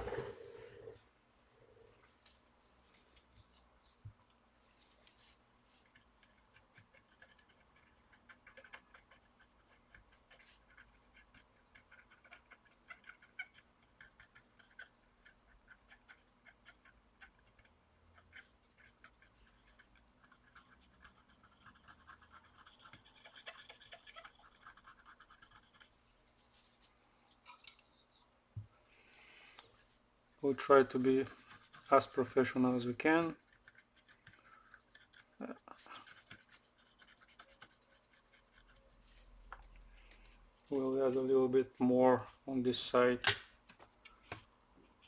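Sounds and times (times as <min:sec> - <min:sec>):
hand tools scratching and ticking: 0:30.5 - 0:38.9.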